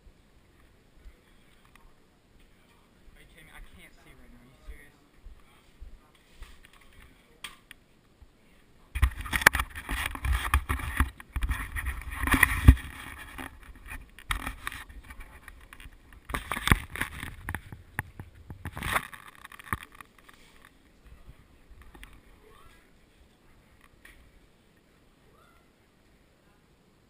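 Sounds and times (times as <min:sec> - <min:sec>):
camera rustling and scraping: 0:05.7 - 0:07.3, 0:09.0 - 0:24.4.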